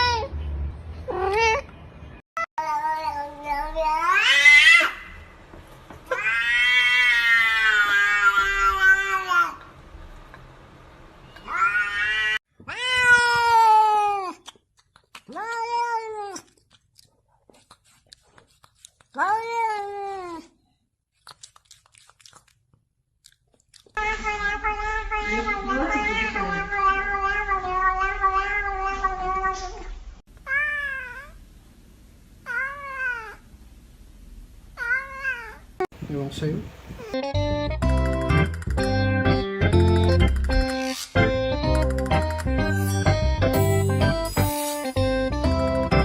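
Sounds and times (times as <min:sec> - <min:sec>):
cat meowing: 0:06.1 - 0:09.6, 0:11.4 - 0:14.3, 0:24.0 - 0:31.4, 0:32.5 - 0:33.4, 0:34.8 - 0:35.7
cat yowling: 0:06.1 - 0:09.6, 0:11.4 - 0:14.4, 0:24.0 - 0:29.8, 0:30.5 - 0:31.4, 0:32.5 - 0:33.5, 0:34.8 - 0:35.7.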